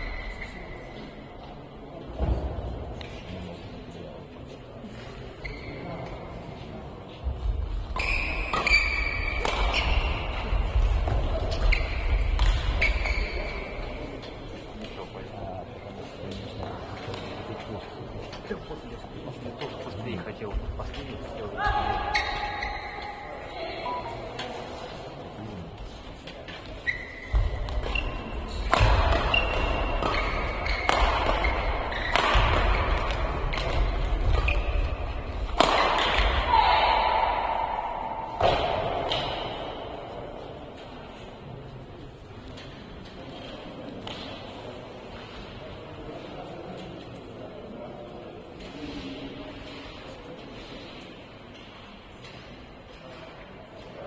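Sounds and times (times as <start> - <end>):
shoe squeaks on court floor: 0.0 - 1.2, 5.4 - 6.2, 7.9 - 10.3, 11.0 - 14.2, 22.1 - 23.3, 26.5 - 35.2
racket hitting shuttlecock: 7.9 - 13.5, 27.3 - 39.9.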